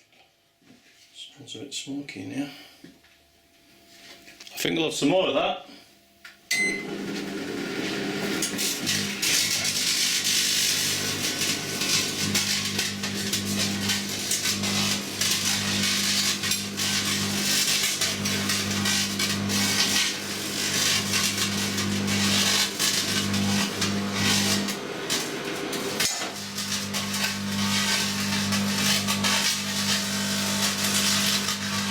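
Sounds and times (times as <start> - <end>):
crackling hiss of metal arcing: 8.4 - 31.9.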